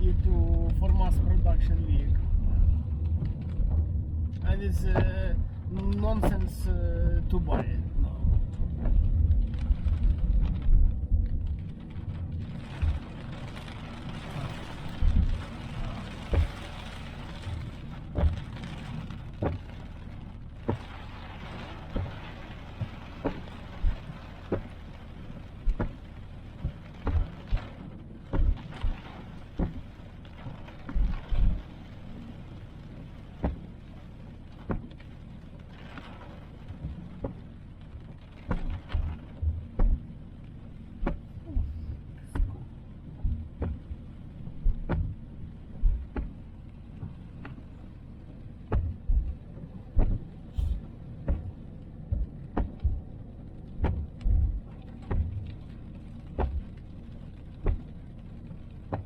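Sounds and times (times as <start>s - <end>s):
car road rumble: 0.0s - 59.0s
knocks and thumps: 2.7s - 6.6s, 18.2s - 18.5s, 19.3s - 19.7s, 25.6s - 26.0s, 26.6s - 29.8s, 34.6s - 34.9s, 38.4s - 40.1s, 41.0s - 42.6s, 43.2s - 44.0s, 44.6s - 45.2s, 45.8s - 46.4s, 48.6s - 53.1s, 53.8s - 55.6s, 56.3s - 56.7s, 57.6s - 57.9s.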